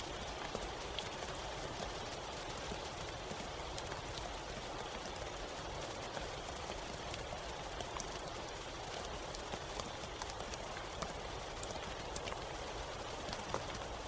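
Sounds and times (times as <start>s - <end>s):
raindrops ticking on surface: 0.0s - 14.0s
steady rain hiss: 0.0s - 14.0s.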